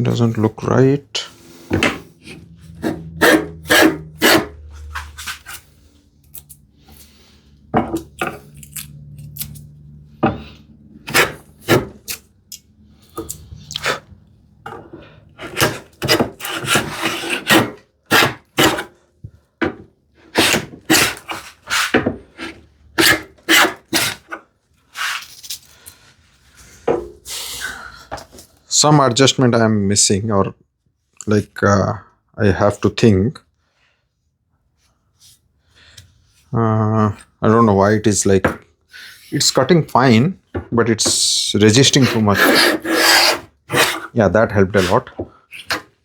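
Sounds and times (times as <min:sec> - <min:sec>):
plane scraping wood: 0:01.2 - 0:05.7, 0:10.2 - 0:12.0, 0:14.8 - 0:18.9, 0:20.2 - 0:24.4, 0:41.0 - 0:45.9.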